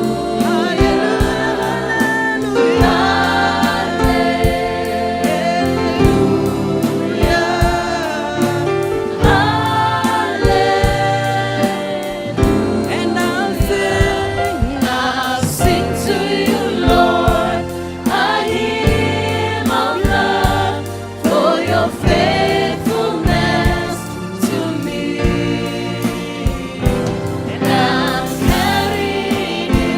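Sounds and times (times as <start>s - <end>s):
band accompaniment: 0.0s - 29.9s
group singing a gospel song: 0.0s - 29.9s
steady drum beat: 0.0s - 29.9s.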